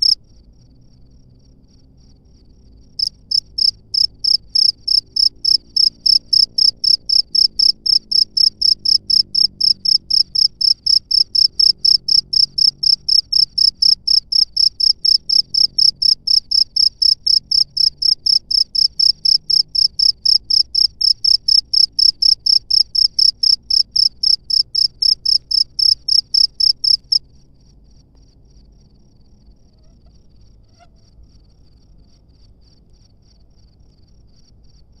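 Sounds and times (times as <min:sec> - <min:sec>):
cricket chirping loudly: 0:00.0 - 0:00.2, 0:02.0 - 0:27.2
faint quick cricket trill: 0:00.0 - 0:35.0.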